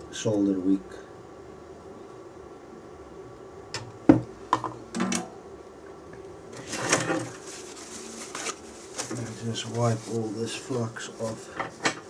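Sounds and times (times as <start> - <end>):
rustling scrape: 6.5 - 12.0.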